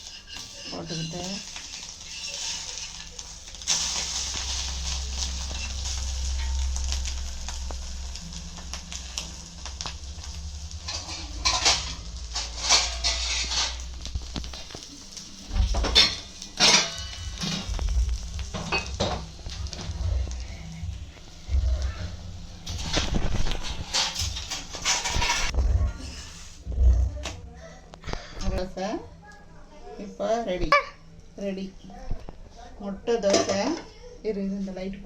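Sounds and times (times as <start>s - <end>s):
food sizzling in oil: 0.0s - 26.7s
spatula scraping a pan: 0.0s - 26.8s.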